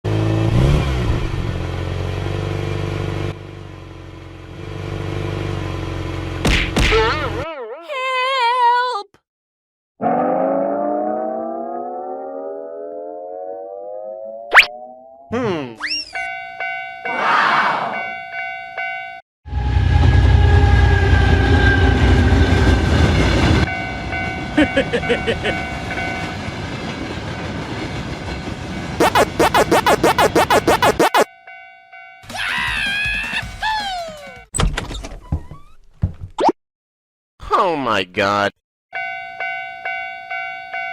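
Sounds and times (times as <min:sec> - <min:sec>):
train rumbling by: 0:19.5 - 0:29.0.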